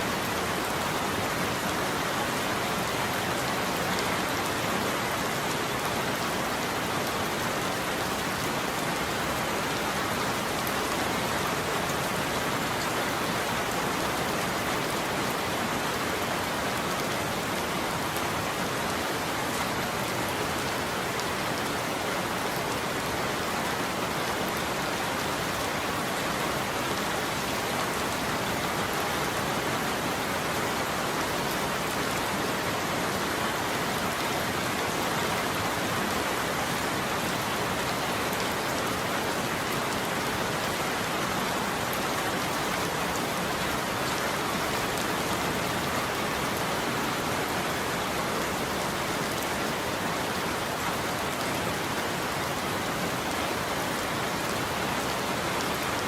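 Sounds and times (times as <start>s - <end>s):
heavy rain falling: 0.0s - 56.0s.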